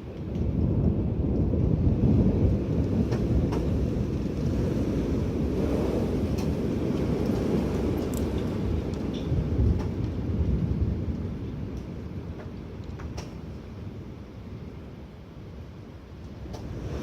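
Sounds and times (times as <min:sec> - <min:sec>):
strong wind rumbling: 0:00.0 - 0:17.0.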